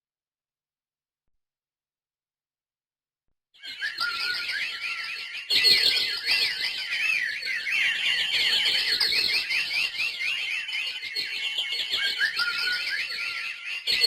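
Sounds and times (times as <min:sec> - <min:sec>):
small birds chirping: 0:03.6 - 0:14.0.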